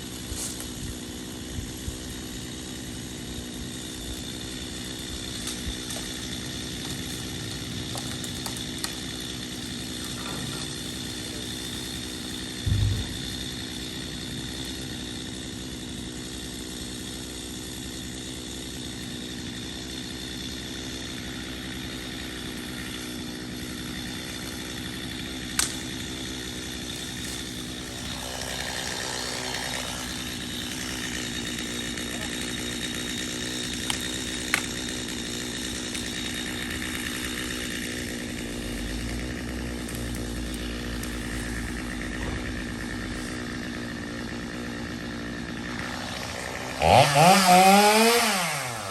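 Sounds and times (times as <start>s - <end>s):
chainsaw engine running: 0.0s - 48.9s
sharp knocks: 12.6s - 13.3s.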